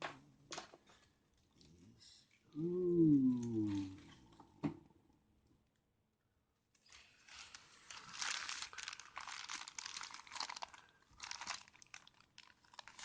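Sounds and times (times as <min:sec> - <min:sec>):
packaging crinkling and rustling: 0:06.8 - 0:13.0.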